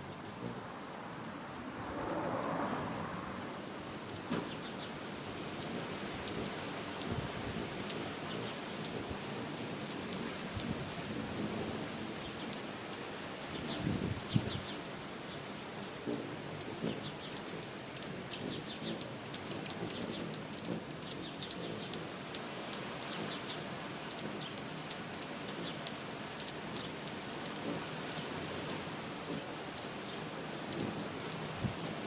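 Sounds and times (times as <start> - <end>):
bird chirping: 0.0 - 32.0.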